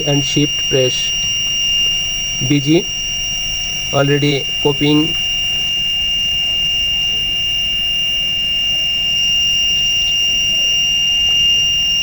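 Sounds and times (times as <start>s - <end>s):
high-pitched electronic buzzer tone: 0.0s - 12.0s.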